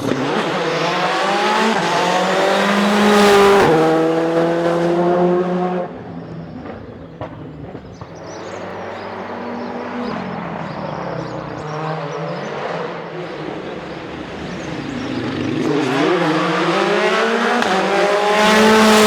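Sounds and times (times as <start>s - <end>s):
distant car engine: 0.0s - 19.0s
rally car passing at high revs: 0.0s - 19.0s.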